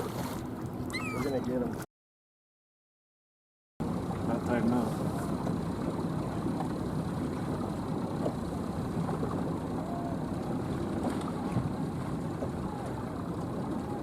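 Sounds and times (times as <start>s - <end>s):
boat engine running: 3.8s - 14.0s.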